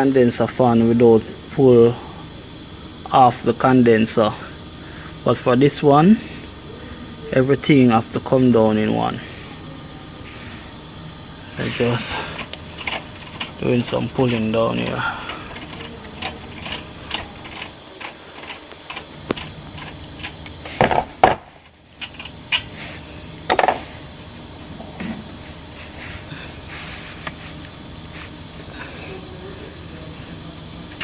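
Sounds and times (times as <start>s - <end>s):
metallic knocks: 23.5s - 23.8s.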